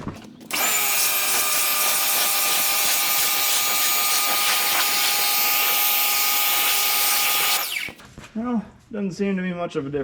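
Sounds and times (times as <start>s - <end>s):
machine whine: 0.5s - 8.0s
pressure washer water jet hissing: 0.5s - 8.0s.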